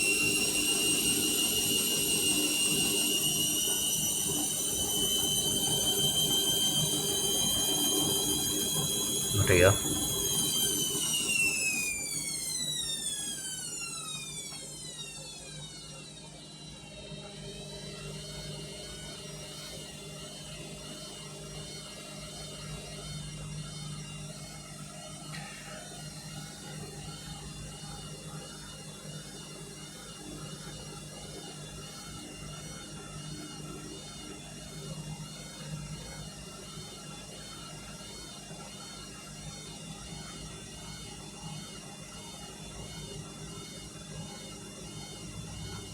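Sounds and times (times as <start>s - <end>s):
washing machine motor whine: 0.0s - 25.2s, 26.0s - 45.9s.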